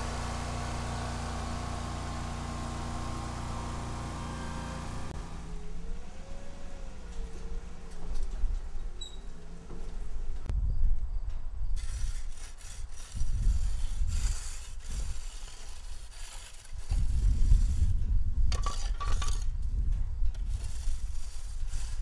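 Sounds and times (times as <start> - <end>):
tools scraping asphalt: 11.8 - 19.6, 20.3 - 22.0.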